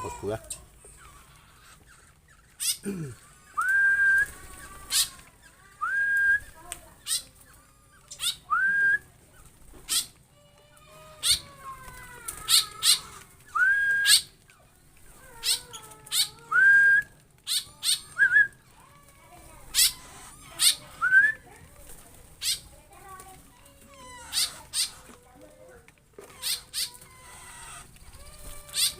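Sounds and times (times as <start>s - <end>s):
songbird chips and calls: 19.7s - 21.0s.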